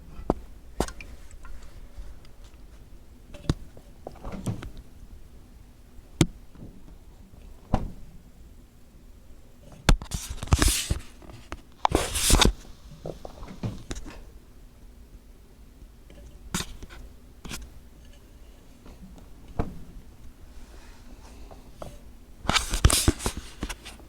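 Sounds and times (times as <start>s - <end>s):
rustling noise: 10.0s - 14.3s, 16.6s - 24.0s.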